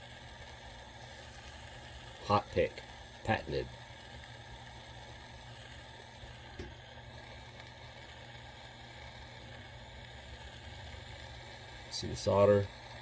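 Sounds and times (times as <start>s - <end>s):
torch flame hissing: 0.0s - 13.0s.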